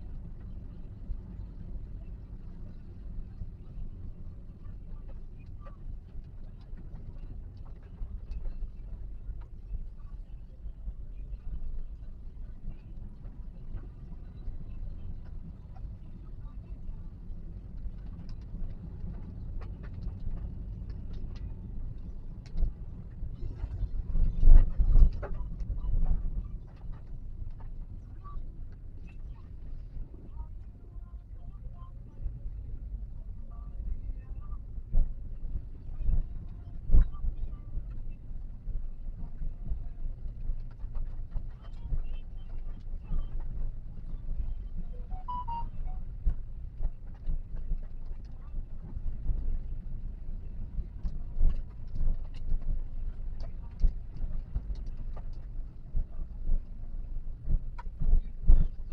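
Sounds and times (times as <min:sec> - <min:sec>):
brief high tones: 0:45.0 - 0:46.0.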